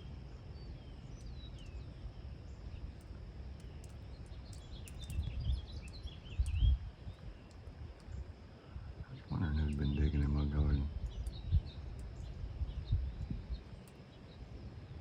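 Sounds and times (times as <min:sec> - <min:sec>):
small birds chirping: 0:00.0 - 0:15.0
wind rumble on microphone: 0:00.0 - 0:15.0.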